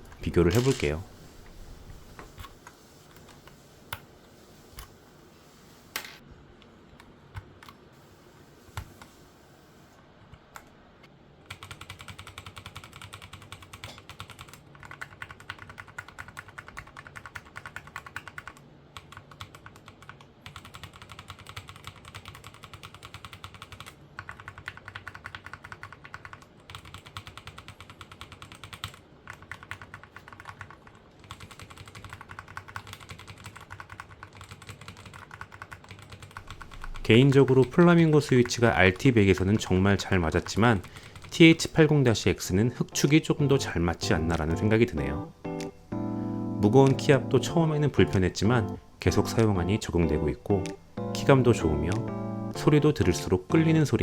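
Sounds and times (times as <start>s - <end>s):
mechanical keyboard typing: 0.0s - 1.0s, 11.5s - 41.8s.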